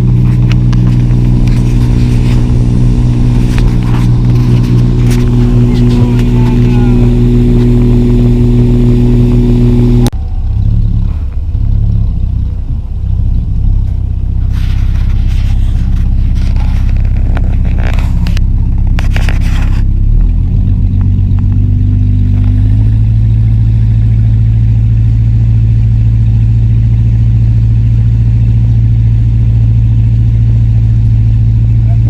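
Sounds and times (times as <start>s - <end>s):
scraping crackling noise: 0.0s - 10.1s, 13.7s - 23.1s
motorboat engine rumbling: 0.0s - 32.0s.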